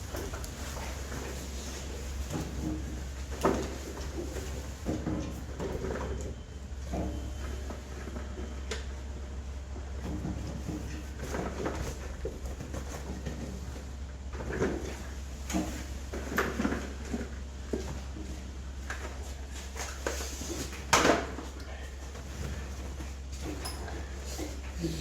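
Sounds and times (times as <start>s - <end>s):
steady low hum: 16.9s - 25.0s.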